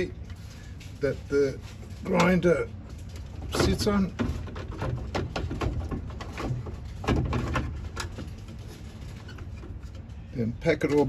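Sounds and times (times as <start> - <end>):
low steady hum: 0.0 - 11.0
clicks and knocks of machine parts: 1.6 - 10.1.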